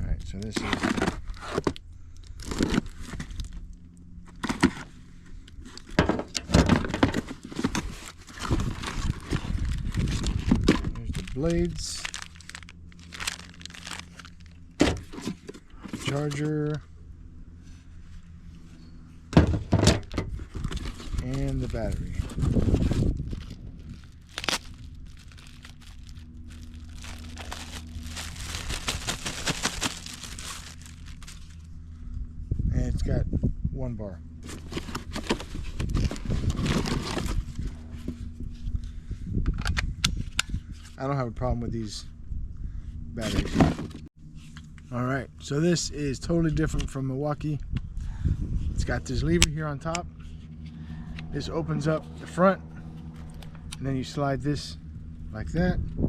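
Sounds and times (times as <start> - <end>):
steady low hum: 0.0 - 56.0
packaging crinkling and rustling: 0.4 - 3.6, 6.8 - 16.5, 20.0 - 31.6, 34.4 - 37.6.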